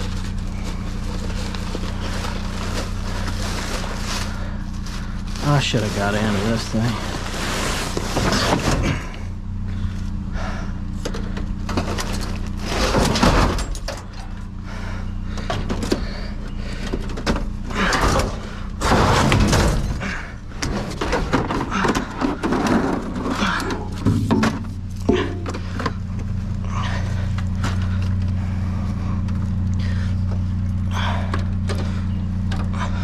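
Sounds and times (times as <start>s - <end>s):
junk rummaged in dumpster: 0.0s - 9.9s, 11.0s - 14.6s, 15.2s - 28.5s
steady low hum: 0.0s - 33.0s
heavy clattering: 15.3s - 29.4s.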